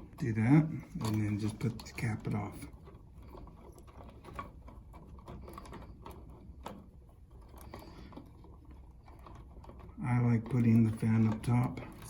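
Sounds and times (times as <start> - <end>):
electrical wires clicking and rubbing: 0.0 - 12.0.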